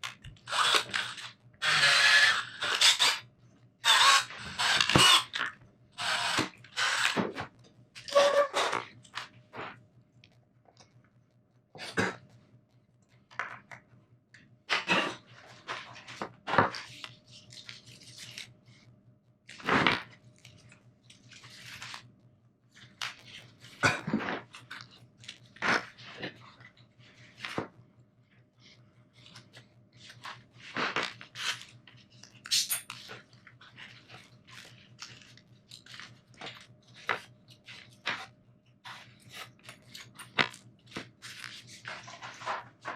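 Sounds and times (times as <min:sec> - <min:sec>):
sharp clicks knocks and scrapes: 0:00.0 - 0:12.4, 0:28.4 - 0:42.9
faint steady hum: 0:00.0 - 0:42.9.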